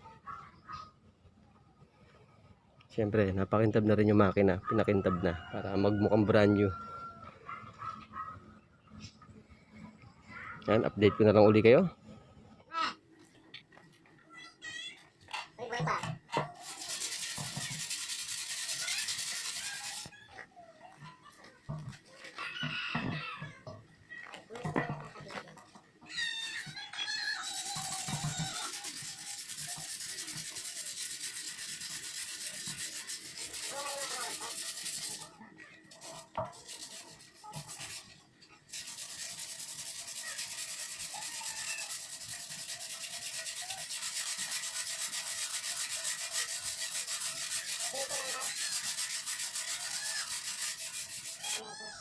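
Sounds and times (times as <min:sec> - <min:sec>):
sanding metal: 0:16.5 - 0:20.1, 0:26.5 - 0:51.6.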